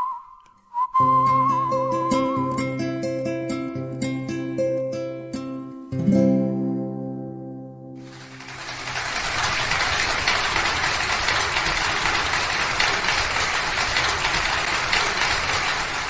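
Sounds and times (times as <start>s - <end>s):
acoustic guitar chord ringing: 1.2s - 8.4s
audience applauding: 8.0s - 16.0s.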